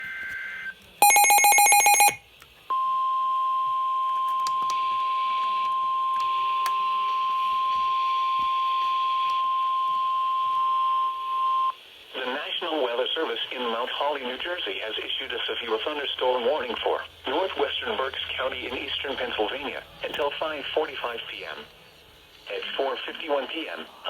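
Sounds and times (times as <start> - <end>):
harsh buzzing beep: 0.1 - 2.2
steady alarm tone: 1.0 - 2.2
faint radio hiss: 4.8 - 24.0.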